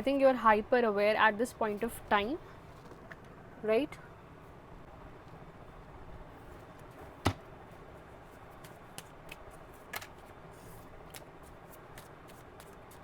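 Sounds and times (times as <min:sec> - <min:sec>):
cards clicking and tapping: 0:08.6 - 0:10.3, 0:11.0 - 0:13.0.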